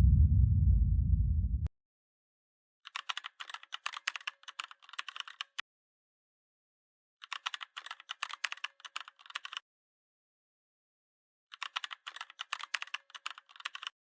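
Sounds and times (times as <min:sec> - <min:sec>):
keyboard typing clicks: 0:02.9 - 0:05.6, 0:11.6 - 0:13.9.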